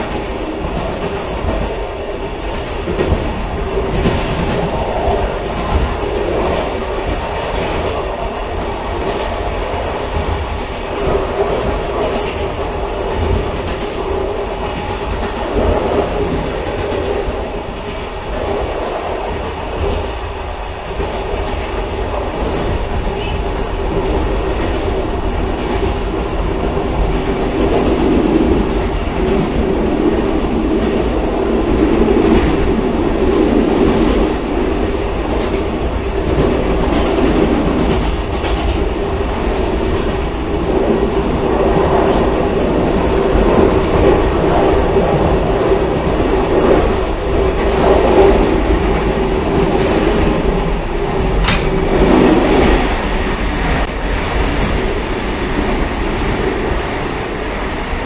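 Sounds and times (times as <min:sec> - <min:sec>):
railcar rumble: 0:00.0 - 0:58.0
wheels clicking over rail joints: 0:51.4 - 0:53.0.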